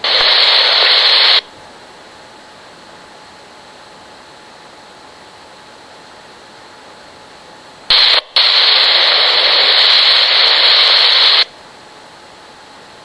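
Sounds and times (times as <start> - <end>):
loud radio static burst: 0.0 - 1.5, 7.9 - 11.5
scanner low hiss: 0.0 - 13.0.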